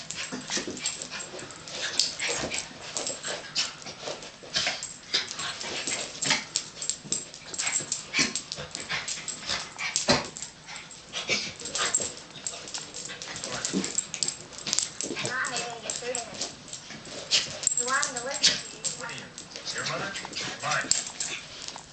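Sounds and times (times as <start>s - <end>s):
dogs play-fighting: 0.0s - 21.9s.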